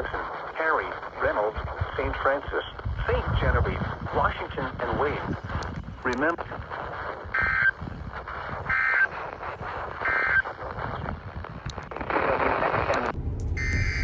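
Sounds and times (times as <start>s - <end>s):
radio static: 0.0s - 14.0s
warbling data bursts: 0.0s - 14.0s
electronic tone burst: 7.3s - 7.8s, 10.0s - 11.0s, 12.3s - 14.0s.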